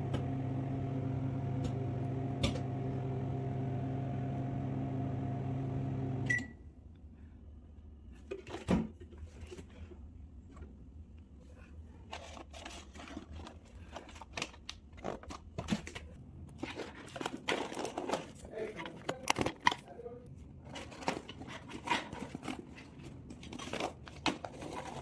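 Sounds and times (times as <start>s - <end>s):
microwave oven humming: 0.0s - 6.6s
short beep: 6.2s - 6.6s.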